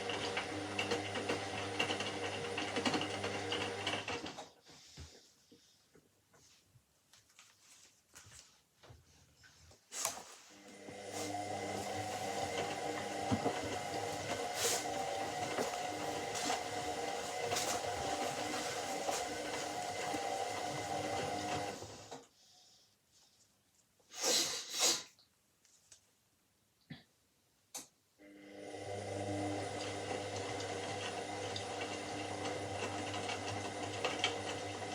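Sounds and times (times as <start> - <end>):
washing machine motor humming: 0.0 - 4.5, 10.6 - 22.3, 28.2 - 34.9.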